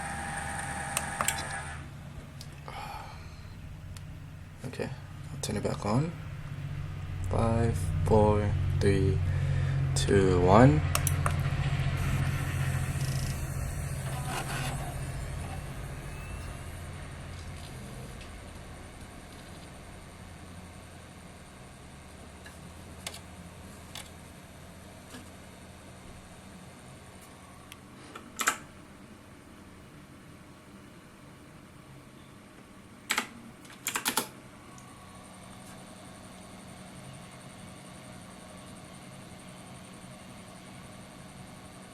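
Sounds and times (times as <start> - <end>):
computer fans humming: 0.0 - 41.9
faint high-pitched pulsing tone: 11.4 - 22.4.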